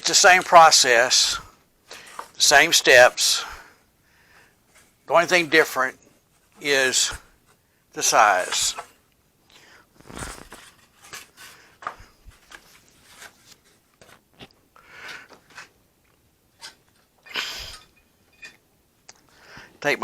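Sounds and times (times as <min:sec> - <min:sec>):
tape and parts clicking and crinkling: 0:10.0 - 0:19.3.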